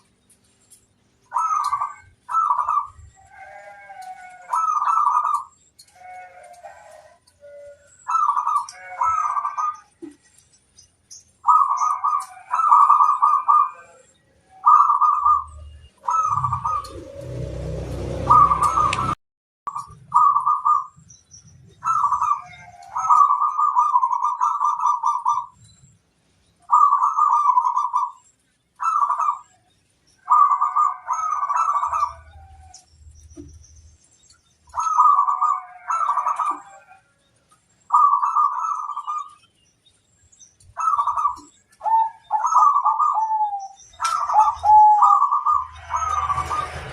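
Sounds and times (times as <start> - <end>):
doves cooing: 1.3 - 10.2, 11.4 - 19.2, 19.8 - 21.0, 21.7 - 25.7, 26.7 - 29.6, 30.2 - 33.6, 34.7 - 37.2, 37.9 - 39.4, 40.7 - 46.9
rushing noise with low rumble: 15.7 - 19.2.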